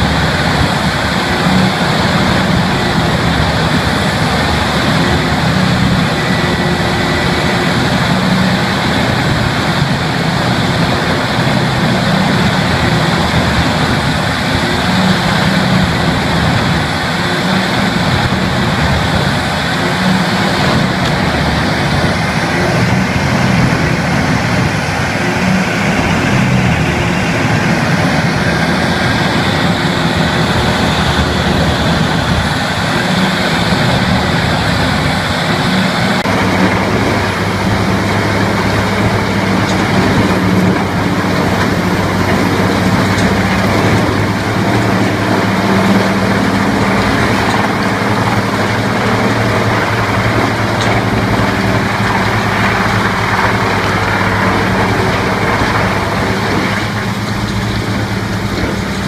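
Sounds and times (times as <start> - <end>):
heavy machinery engine running: 0.0 - 59.0.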